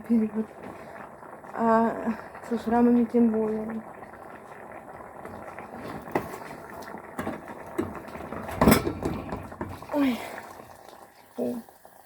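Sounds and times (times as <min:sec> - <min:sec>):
liquid pouring into pot: 0:00.5 - 0:12.0
cookware clanking: 0:07.2 - 0:09.9.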